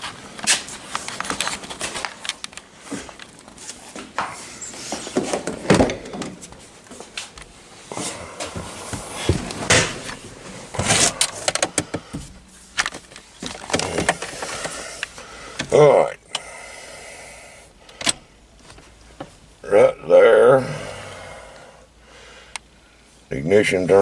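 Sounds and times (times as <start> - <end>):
knocks and clicks in vehicle cab: 9.0 - 15.8.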